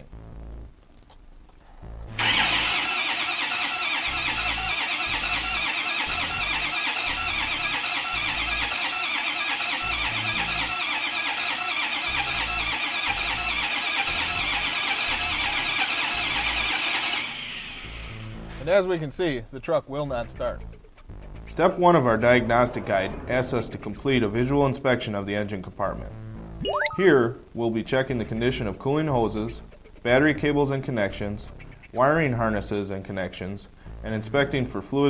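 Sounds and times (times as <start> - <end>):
starter motor cranking engine: 2.1 - 18.0.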